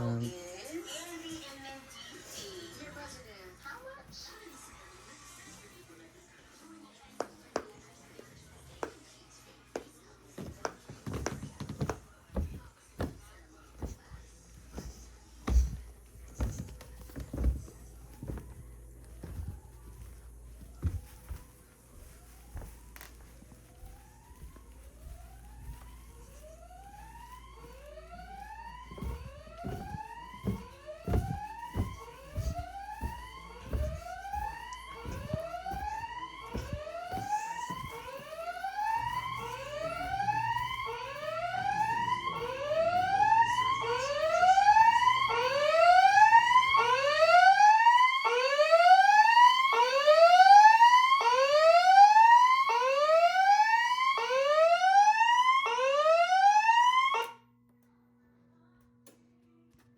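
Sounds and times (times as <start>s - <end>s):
low thumps: 27.6s - 45.0s
fire alarm whoop tone: 35.9s - 57.4s.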